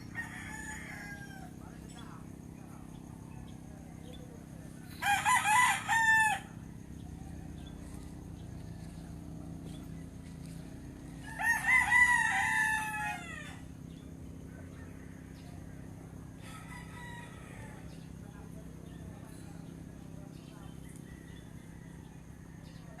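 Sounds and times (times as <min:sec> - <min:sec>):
rooster crowing: 0:00.0 - 0:01.8, 0:04.9 - 0:09.4, 0:11.0 - 0:14.0, 0:14.7 - 0:18.1.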